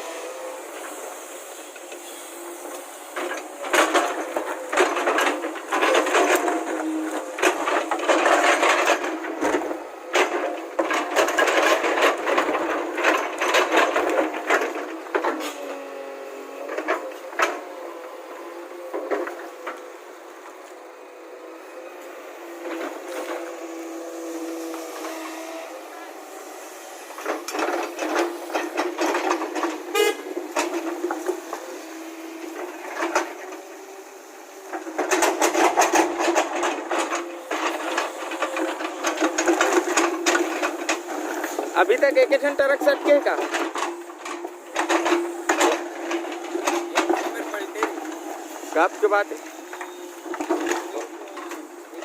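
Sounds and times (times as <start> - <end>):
diesel engine running: 0.0 - 52.0
sharp metallic knocks and clatters: 34.7 - 51.7.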